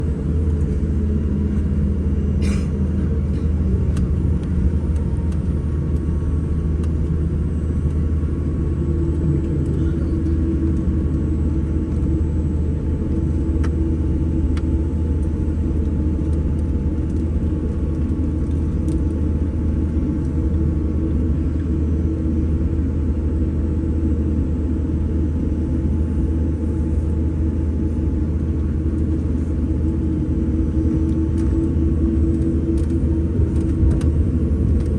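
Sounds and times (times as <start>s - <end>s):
jet engines rumbling from cabin: 0.0s - 34.9s
steady hum: 0.0s - 34.9s.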